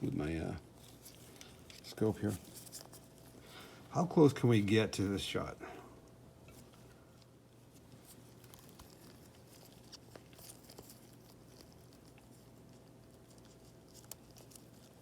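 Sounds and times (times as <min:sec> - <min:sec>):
small hand tools clicking and scratching: 0:08.0 - 0:15.0.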